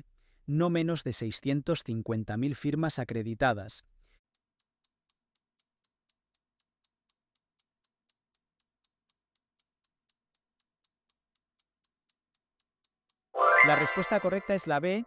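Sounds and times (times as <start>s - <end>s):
clock ticking: 4.3s - 13.3s.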